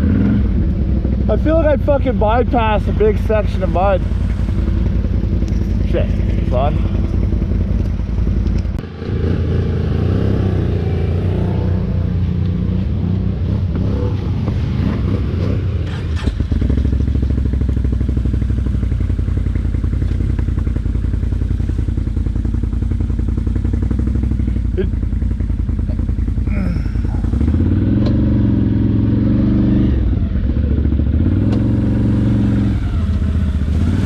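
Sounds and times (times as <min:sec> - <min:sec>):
quad bike engine running: 0:00.0 - 0:34.0.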